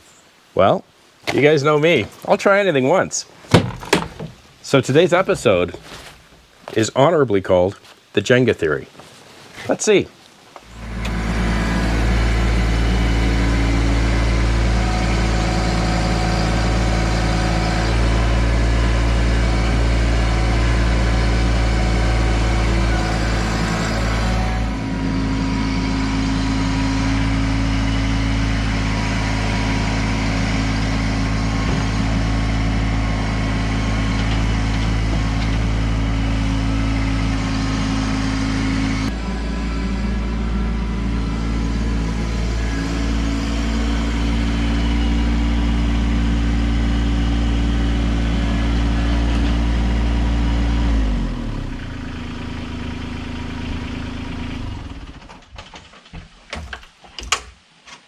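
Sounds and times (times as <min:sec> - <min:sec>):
tractor diesel engine running: 0:10.6 - 0:56.9.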